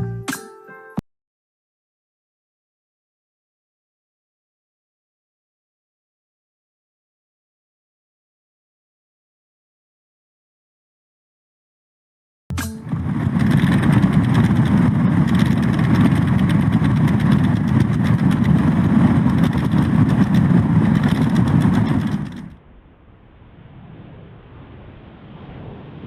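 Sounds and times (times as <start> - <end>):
vehicle engine noise: 12.5 - 22.6
muffled rumble: 12.5 - 25.9
wind on microphone: 12.5 - 26.0.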